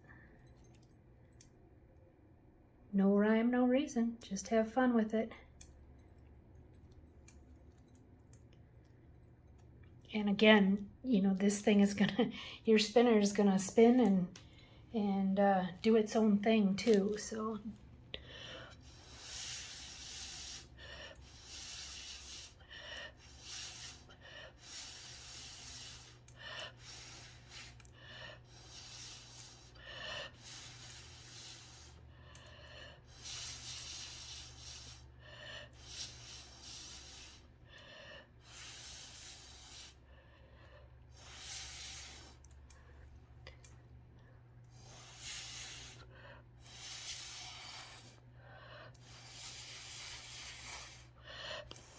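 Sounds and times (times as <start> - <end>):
steady low hum: 0.0 - 51.9
person breathing close to microphone: 18.2 - 43.1, 44.7 - 51.9.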